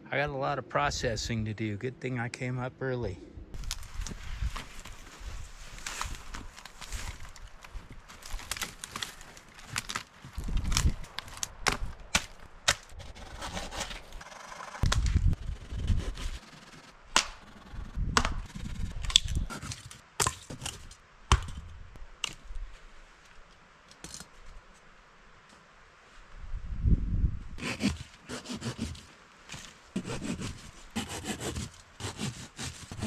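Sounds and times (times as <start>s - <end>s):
dry branches cracking: 3.6s - 13.0s.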